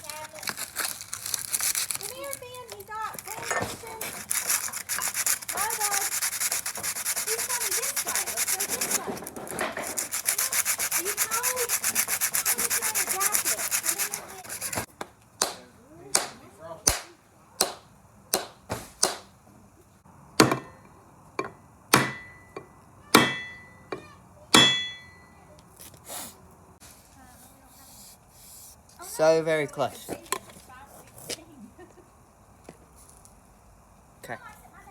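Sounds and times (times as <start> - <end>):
scraping on wooden handle: 3.1 - 14.9
sharp knocks with metallic ring: 15.4 - 19.3, 20.4 - 25.4.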